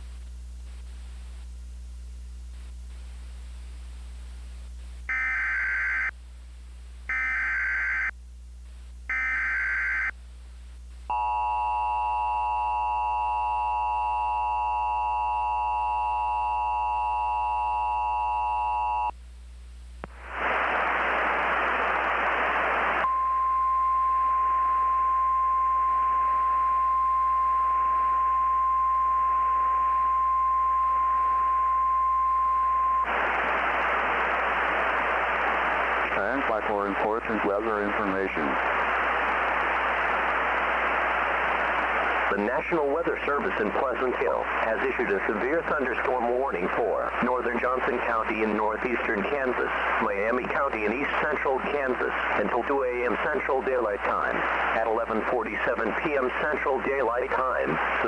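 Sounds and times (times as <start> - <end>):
radio static: 20.0 - 23.1, 33.0 - 58.0.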